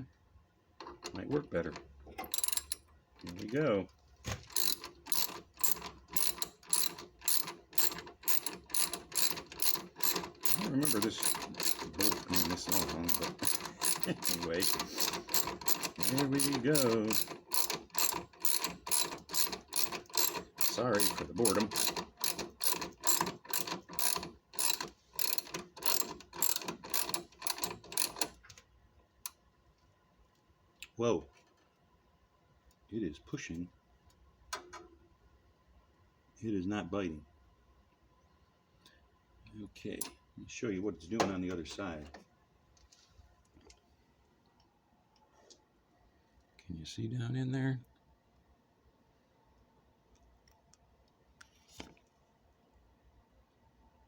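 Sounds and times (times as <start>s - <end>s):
ratchet wrench clicking: 2.3s - 2.8s, 4.5s - 28.3s.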